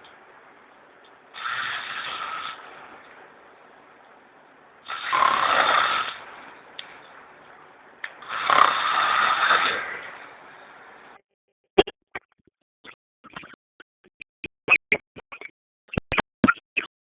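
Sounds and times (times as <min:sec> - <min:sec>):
person snoring: 0:01.4 - 0:02.6, 0:04.9 - 0:06.2, 0:08.2 - 0:10.2.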